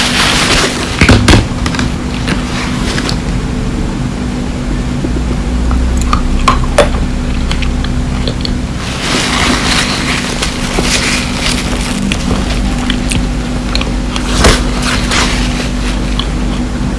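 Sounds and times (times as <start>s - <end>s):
steady low hum: 0.0s - 16.9s
crunching and chewing candy: 5.8s - 16.7s.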